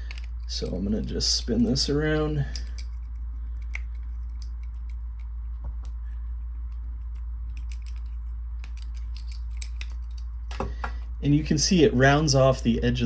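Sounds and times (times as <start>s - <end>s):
steady low hum: 0.0s - 13.0s
tool clicking and scraping on cable: 1.5s - 10.3s.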